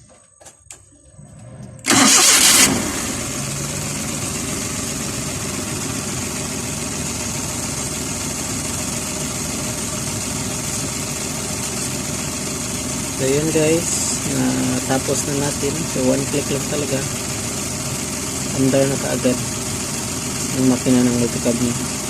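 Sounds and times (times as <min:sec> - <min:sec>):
engine idling: 0:00.0 - 0:22.0
engine cranking and starting: 0:00.6 - 0:03.8.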